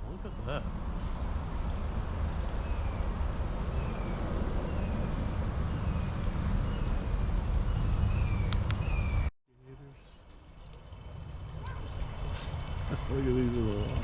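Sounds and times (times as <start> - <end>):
rushing water-like noise: 9.8 - 14.0
bird chirping: 11.0 - 13.4.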